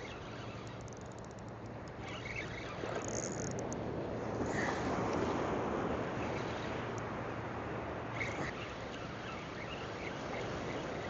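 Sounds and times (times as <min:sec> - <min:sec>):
surf on the beach: 0:03.8 - 0:11.0.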